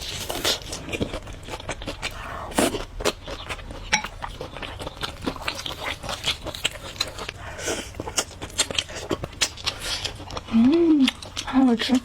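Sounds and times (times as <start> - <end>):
person chewing: 0.0 - 12.0.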